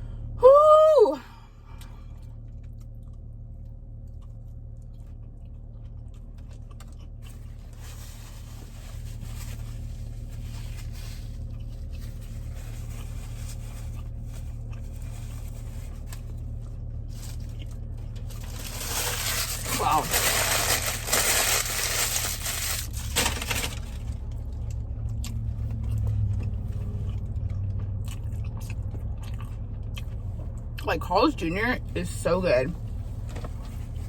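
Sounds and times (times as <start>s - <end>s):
low hum: 0.0s - 34.0s
person chewing food: 1.8s - 7.8s, 11.4s - 18.5s, 24.4s - 30.8s.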